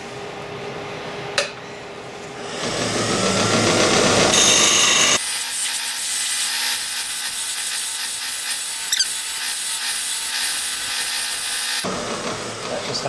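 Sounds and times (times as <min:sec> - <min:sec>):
sharp tool scrape: 0:04.5 - 0:11.9.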